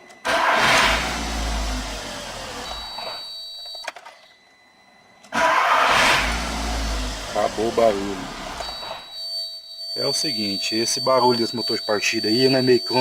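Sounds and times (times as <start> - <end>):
car engine running: 0.3 - 2.9, 5.4 - 8.7
starter motor cranking engine: 5.3 - 8.7.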